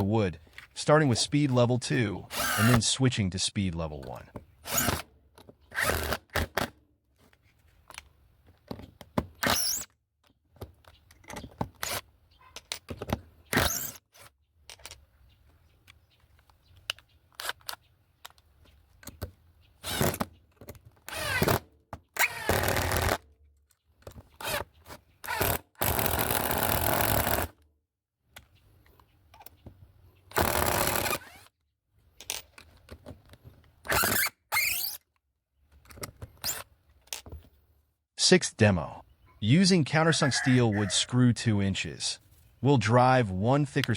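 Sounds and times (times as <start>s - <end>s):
impact driver driving screws: 2.3s - 2.8s, 4.6s - 5.0s, 30.3s - 31.5s, 33.8s - 35.0s
handling clicks and knocks: 35.7s - 37.6s.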